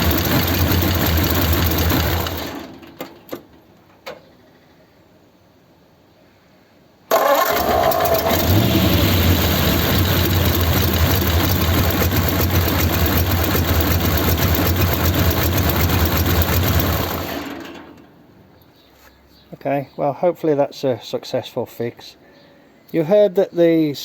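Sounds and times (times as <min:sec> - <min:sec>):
car engine running: 0:00.0 - 0:02.6, 0:08.0 - 0:17.4
engine starter cranking: 0:00.0 - 0:03.4, 0:07.1 - 0:18.1.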